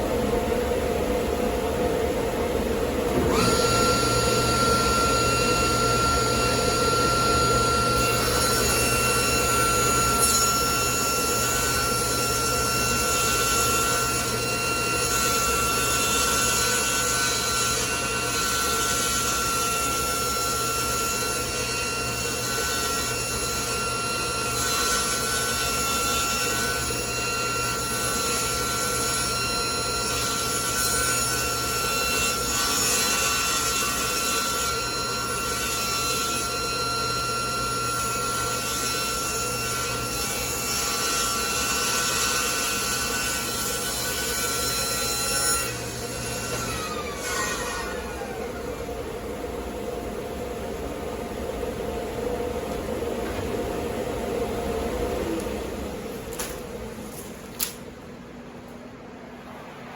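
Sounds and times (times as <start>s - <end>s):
table saw whining: 3.1s - 50.6s.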